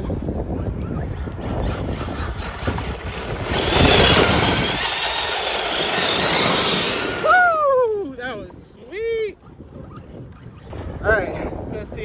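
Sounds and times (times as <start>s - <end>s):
electric rc car accelerating: 0.3s - 7.7s
high motor whine: 0.5s - 7.8s.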